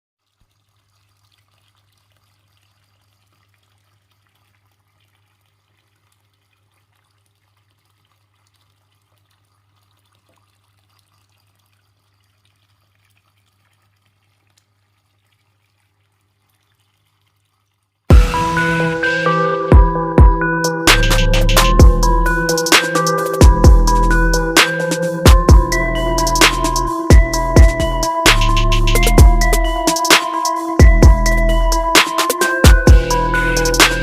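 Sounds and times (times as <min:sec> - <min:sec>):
fountain water trickling: 0:00.2 - 0:19.0, 0:29.2 - 0:31.9
loud electronic music: 0:18.1 - 0:34.0.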